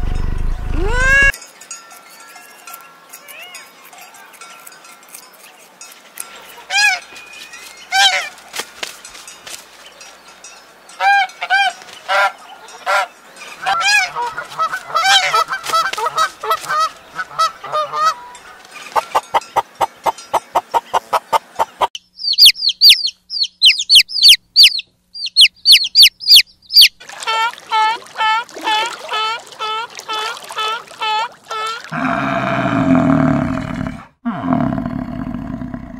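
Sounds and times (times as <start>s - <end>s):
geese honking: 7.9s - 8.4s, 11.0s - 18.4s
high-pitched peeping calls: 16.7s - 27.0s.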